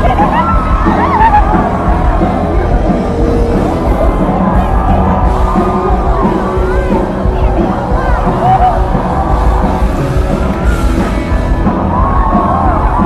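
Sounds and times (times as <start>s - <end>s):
crowd voices: 0.0s - 13.0s
live rock band playing: 0.0s - 13.0s.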